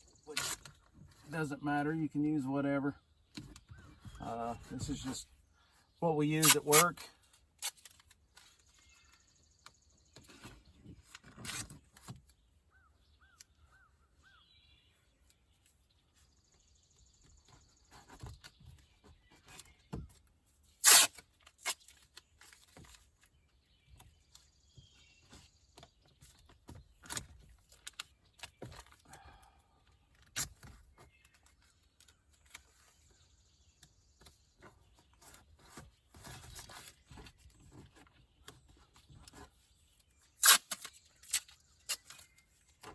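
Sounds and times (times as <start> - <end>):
masking tape pulled off roll: 6.4 - 6.9, 20.7 - 22.3, 40.4 - 42.3.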